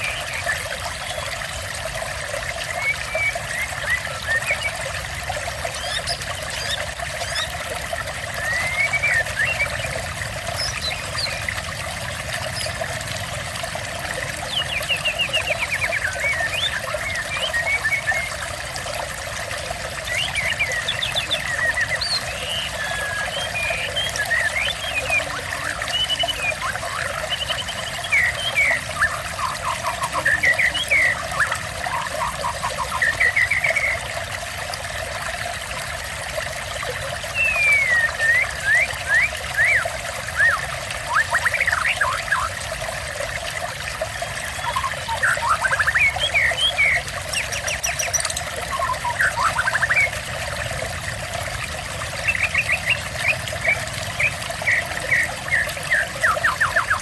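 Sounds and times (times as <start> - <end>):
water trickling and splashing: 0.0 - 57.0
songbird singing: 8.3 - 12.9, 14.2 - 18.4, 19.9 - 34.1, 37.0 - 42.5, 44.1 - 50.3, 52.1 - 57.0.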